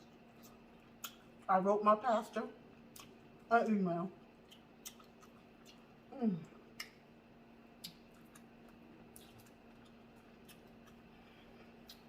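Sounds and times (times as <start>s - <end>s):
low electrical hum: 0.0s - 12.0s
wet eating mouth sounds: 4.2s - 7.0s, 7.8s - 12.0s
person humming mmm: 6.1s - 6.5s.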